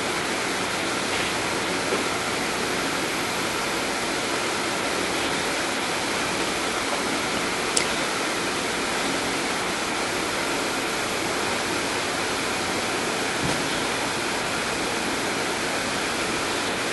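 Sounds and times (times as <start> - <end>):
sharp click: 7.8 - 8.0.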